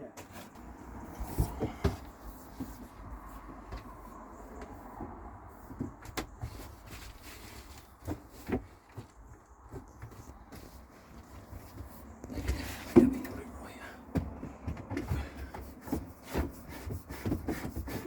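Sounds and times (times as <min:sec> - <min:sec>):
knocks and clunks of cable: 0:00.2 - 0:03.0, 0:14.1 - 0:17.7.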